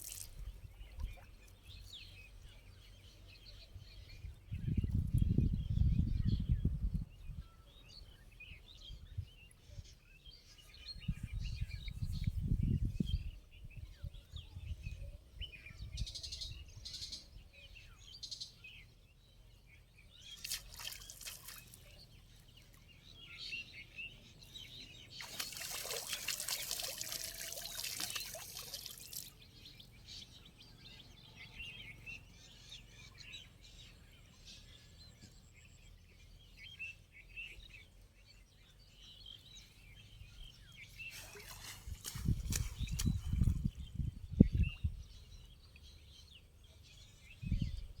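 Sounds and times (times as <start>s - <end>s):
water splashing and pouring: 0.0s - 0.5s, 20.4s - 21.8s, 25.1s - 29.4s, 41.1s - 43.7s
small birds chirping: 0.0s - 48.0s.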